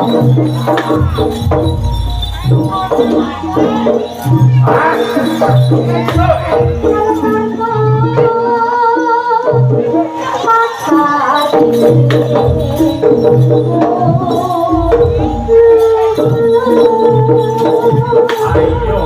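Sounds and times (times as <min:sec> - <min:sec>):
high wavering melody: 0:00.0 - 0:08.2, 0:10.5 - 0:19.0
repeating pitched percussion: 0:00.0 - 0:08.3, 0:10.2 - 0:19.0.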